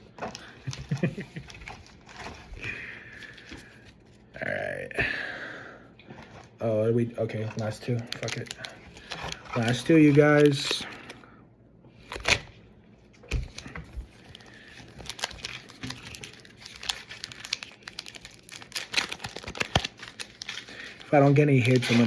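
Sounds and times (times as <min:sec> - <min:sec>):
foil wrapper tearing and crinkling: 0:00.2 - 0:02.4, 0:07.4 - 0:11.2, 0:12.0 - 0:12.5, 0:13.4 - 0:22.0.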